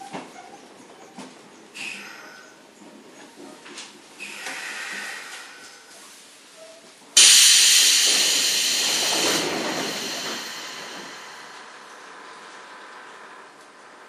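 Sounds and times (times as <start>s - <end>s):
train brake air hiss: 1.8s - 2.3s, 4.2s - 6.5s, 7.2s - 12.2s.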